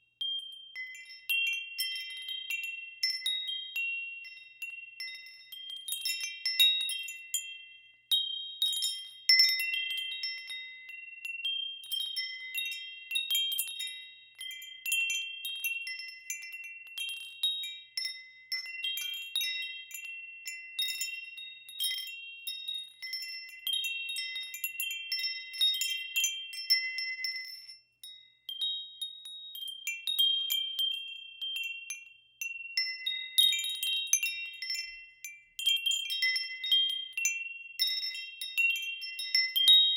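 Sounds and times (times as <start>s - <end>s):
wind chimes ringing: 0.0s - 39.9s.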